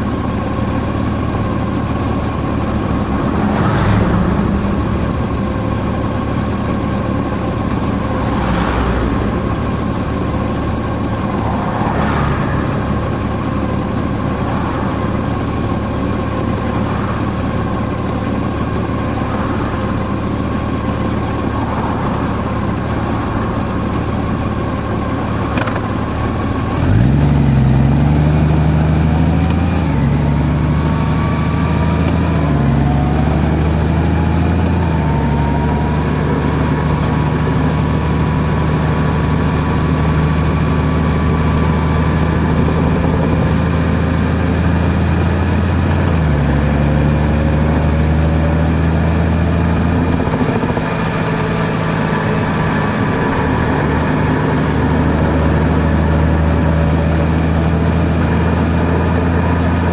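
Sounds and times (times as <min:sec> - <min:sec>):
car engine running: 0:00.0 - 0:59.9
road noise: 0:00.0 - 0:59.9.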